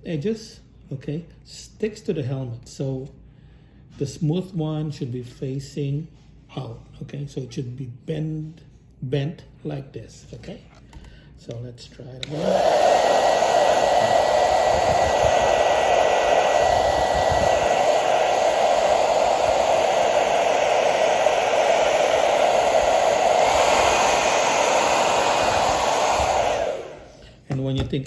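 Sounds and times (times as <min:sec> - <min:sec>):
blow dryer running: 0:12.2 - 0:27.4.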